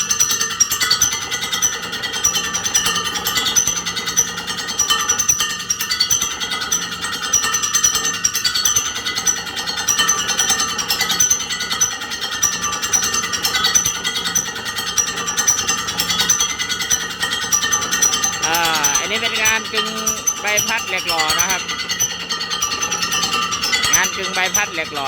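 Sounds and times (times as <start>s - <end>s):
lathe tool chattering screech on metal: 18.0s - 25.0s.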